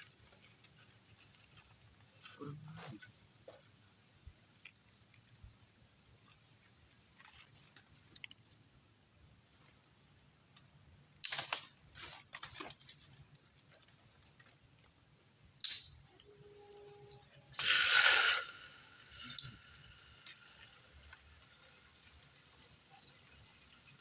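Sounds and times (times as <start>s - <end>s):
cooking gear rustling and scraping: 11.7s - 15.2s
loud hiss: 17.5s - 21.5s.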